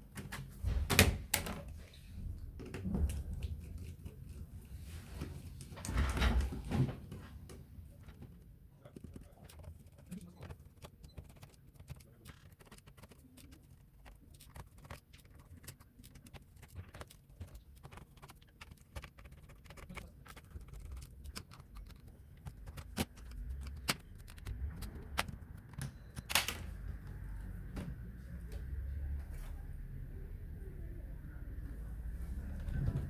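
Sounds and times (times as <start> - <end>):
tools clicking on laptop parts: 8.9 - 26.7.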